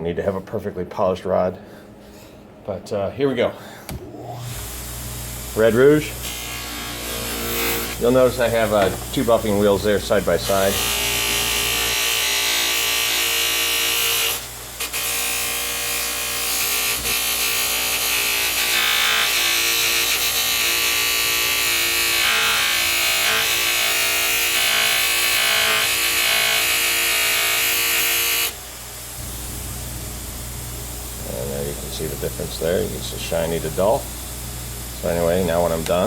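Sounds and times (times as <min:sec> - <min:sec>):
electric motor whine: 0:04.2 - 0:28.6
rushing hiss of polishing: 0:07.5 - 0:14.0.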